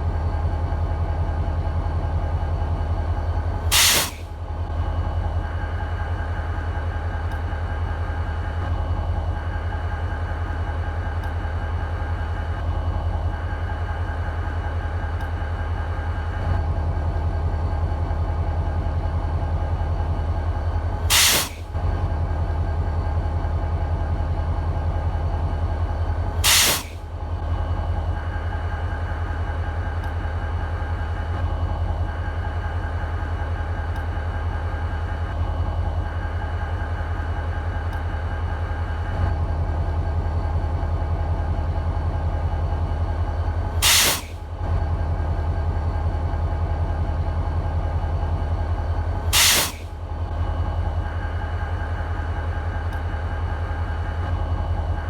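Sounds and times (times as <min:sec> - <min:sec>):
diesel locomotive idling: 0:00.0 - 0:55.0
sharp air release blast: 0:03.7 - 0:04.3, 0:21.1 - 0:21.7, 0:26.4 - 0:27.0, 0:43.8 - 0:44.4, 0:49.3 - 0:49.9.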